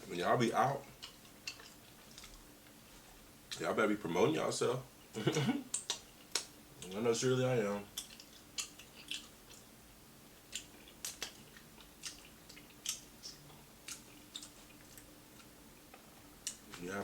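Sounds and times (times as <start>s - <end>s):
chewing crispy food: 0.4s - 3.6s, 5.3s - 7.1s, 7.9s - 16.8s
wet mouth clicks: 5.7s - 6.5s, 8.0s - 9.7s, 10.5s - 15.1s.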